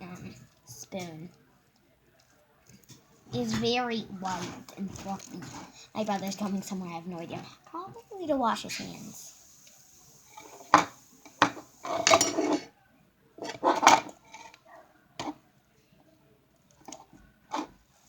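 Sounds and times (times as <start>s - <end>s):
spoon scraping mixing bowl: 2.6s - 7.7s, 9.7s - 12.7s, 13.4s - 15.4s, 16.8s - 17.8s.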